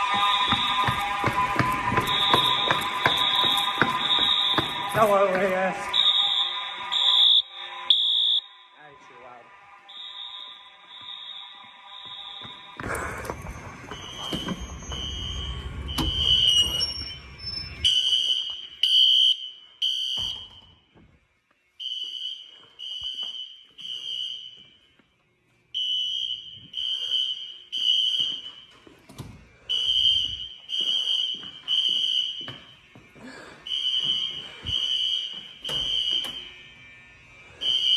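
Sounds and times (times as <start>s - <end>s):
fire alarm horn blasts: 0.0s - 21.1s, 21.7s - 37.9s
rumbling noise: 12.9s - 17.9s.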